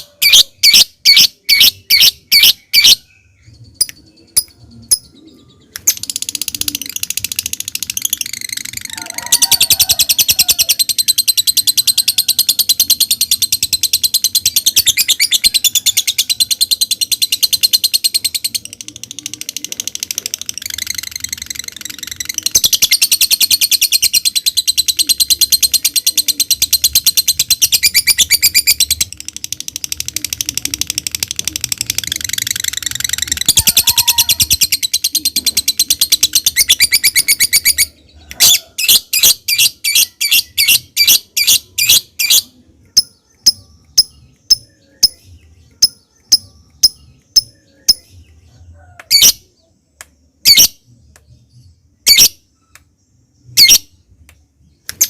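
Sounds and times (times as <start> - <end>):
lovebird chattering: 5.8 - 48.0, 53.6 - 53.9.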